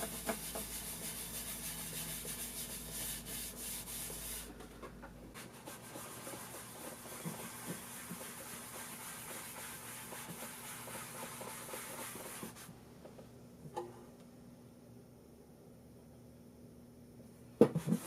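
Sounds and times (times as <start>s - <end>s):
cloth rubbing wax on wood: 0.0s - 4.5s, 5.4s - 12.7s.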